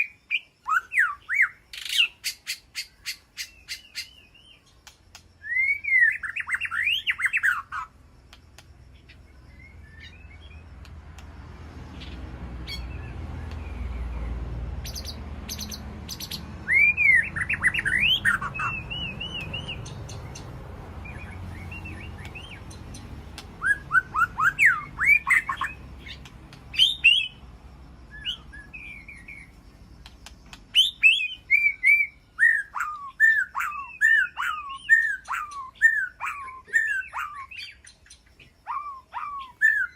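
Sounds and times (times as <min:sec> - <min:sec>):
birds calling sweeping notes: 0:00.0 - 0:39.9
sharp bird ticks: 0:01.7 - 0:05.5, 0:06.1 - 0:14.0, 0:14.8 - 0:16.5, 0:17.2 - 0:27.5, 0:28.2 - 0:31.8.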